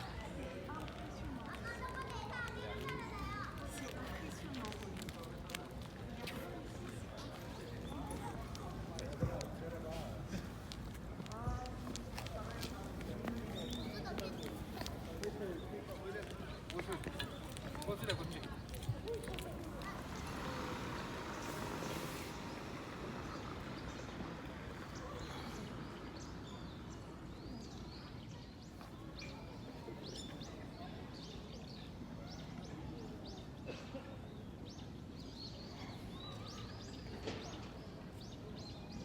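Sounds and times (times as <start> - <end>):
small birds chirping: 10.6 - 33.6.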